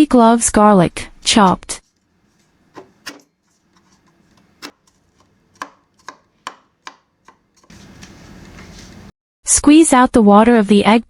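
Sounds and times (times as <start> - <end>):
knife chopping on cutting board: 0.9 - 9.1.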